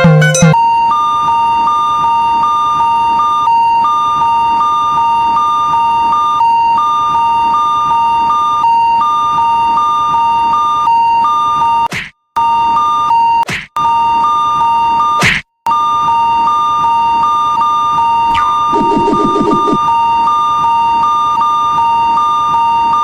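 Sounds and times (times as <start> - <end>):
steady high beep: 18.3 - 19.8
pulsing higher alarm tone: 18.3 - 20.0.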